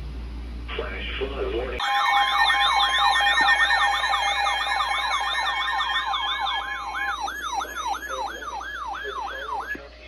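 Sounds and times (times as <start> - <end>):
steady two-tone attention signal: 1.8 - 9.8
warbling siren-like alert tone: 1.8 - 9.8.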